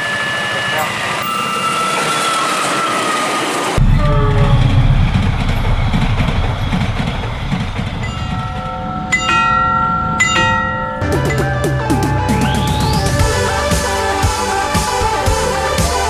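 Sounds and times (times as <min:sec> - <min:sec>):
train passing with low rumble: 0:00.0 - 0:11.1
stacked steady tones: 0:03.8 - 0:16.0.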